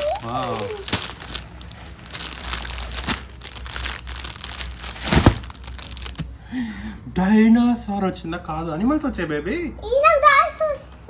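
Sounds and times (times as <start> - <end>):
packaging ripping: 0.0 - 6.3
packaging crinkling and rustling: 0.0 - 6.4.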